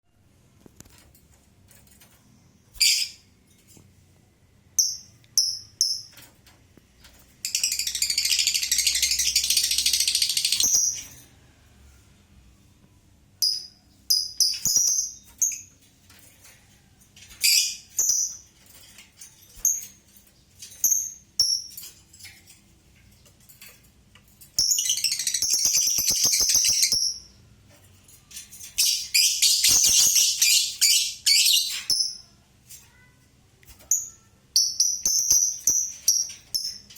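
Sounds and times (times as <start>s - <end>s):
lovebird sharp chirps: 2.7s - 3.2s, 24.6s - 27.4s, 28.8s - 32.3s.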